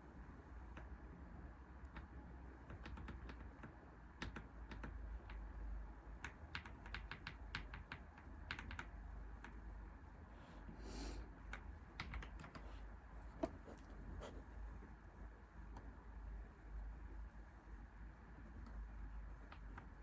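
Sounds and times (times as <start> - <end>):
typing on computer keyboard: 1.9 - 5.4, 6.2 - 9.6, 11.5 - 12.6.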